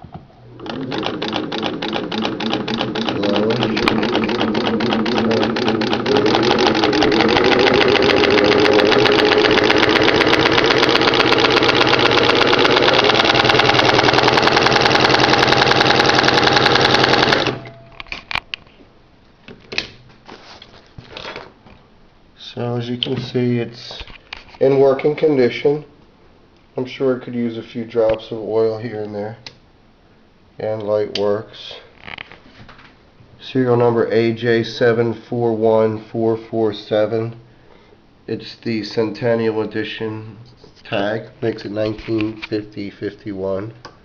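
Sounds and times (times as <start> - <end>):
motor hum: 0.1 - 17.8
sewing machine clatter: 0.5 - 17.7.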